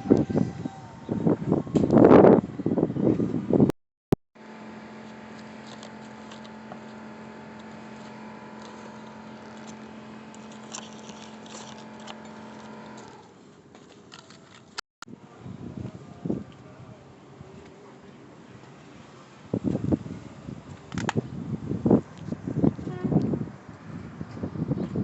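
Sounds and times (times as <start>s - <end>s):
low machine hum: 0.0s - 3.6s, 4.4s - 25.0s.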